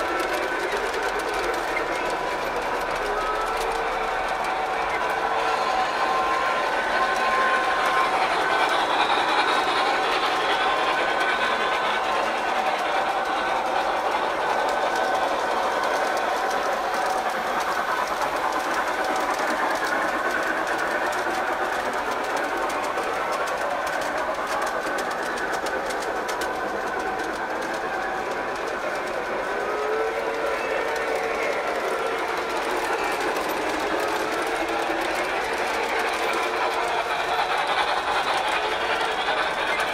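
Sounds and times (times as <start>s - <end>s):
fine rapid clicking: 0.0s - 39.9s
model train motor whir: 0.0s - 39.9s.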